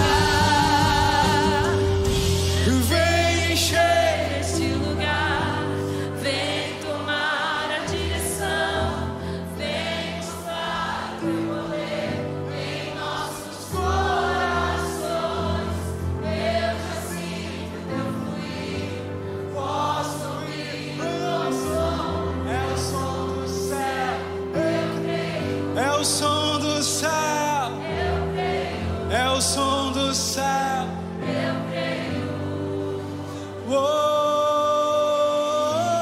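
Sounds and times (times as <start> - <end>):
band with held bass notes: 0.0 - 4.2
voices singing: 0.0 - 34.9.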